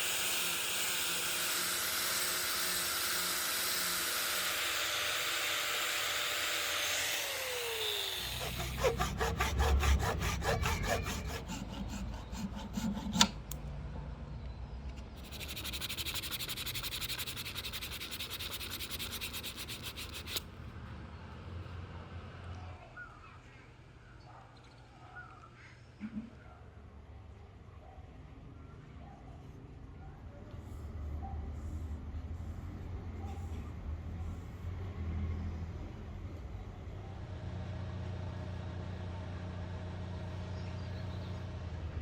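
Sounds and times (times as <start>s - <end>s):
small motor hissing: 0.0s - 13.6s, 15.0s - 20.4s
rubbing strokes on hardwood: 8.2s - 13.4s, 15.2s - 20.4s.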